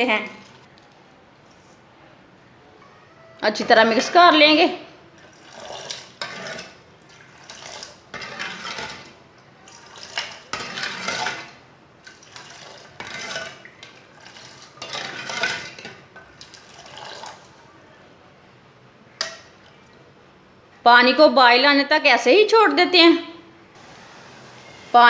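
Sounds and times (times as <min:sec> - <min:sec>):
spoon stirring and scraping pan: 0:03.4 - 0:17.7, 0:19.2 - 0:19.9.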